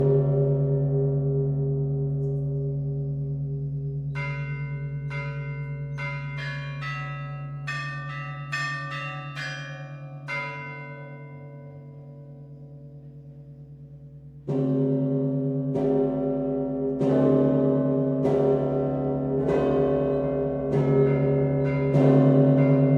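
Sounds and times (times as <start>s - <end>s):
deep bell humming: 0.0s - 22.9s
higher bells striking quickly: 4.2s - 11.6s, 17.0s - 22.9s.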